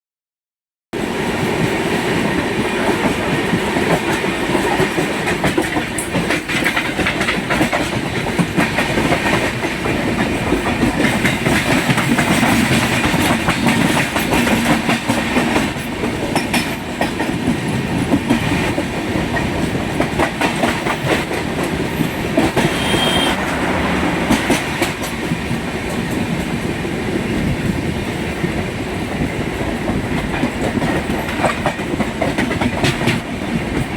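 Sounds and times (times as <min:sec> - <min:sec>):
train wheels clattering: 0:01.4 - 0:33.9
short high squeal: 0:22.7 - 0:24.0.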